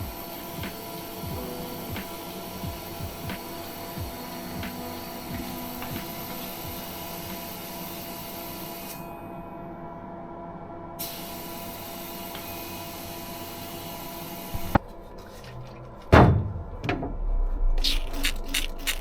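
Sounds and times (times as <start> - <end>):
mechanical hum: 0.0 - 19.0
heavy thud with falling sweep: 16.2 - 17.9.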